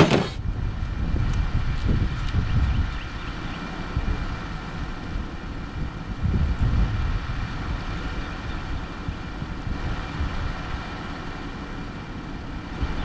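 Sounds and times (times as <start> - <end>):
van engine idling: 3.2 - 13.0.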